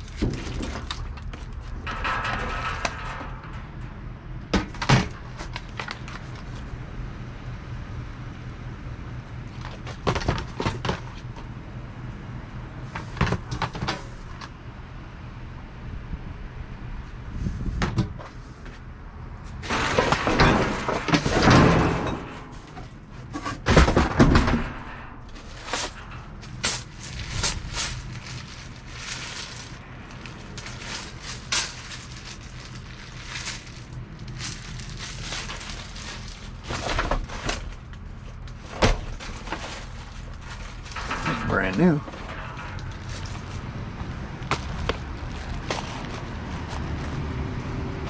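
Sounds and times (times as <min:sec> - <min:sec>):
rustling and clattering items: 0:00.0 - 0:06.8, 0:09.5 - 0:11.5, 0:12.9 - 0:14.5, 0:19.5 - 0:47.7
low steady hum: 0:18.4 - 0:48.0
knocks and clinks: 0:24.2 - 0:37.9, 0:38.6 - 0:43.6, 0:44.4 - 0:46.7.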